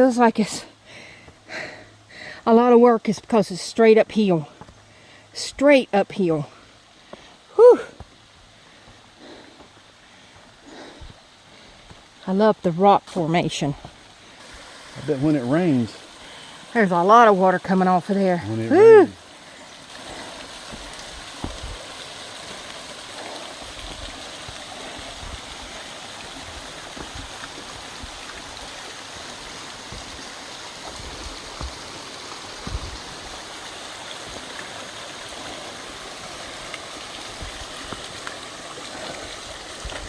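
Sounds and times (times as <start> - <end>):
waterfall rushing over rock: 13.9 - 40.0.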